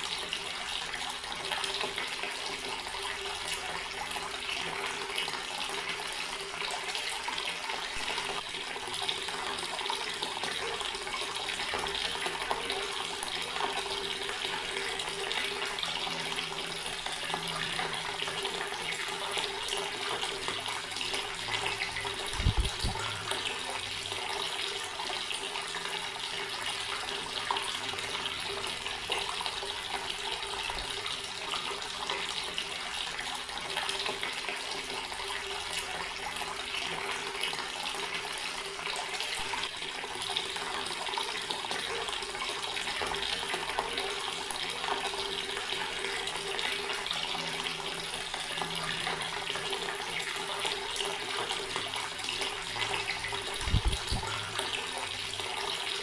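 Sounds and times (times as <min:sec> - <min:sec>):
tap water running: 0:00.0 - 0:56.0.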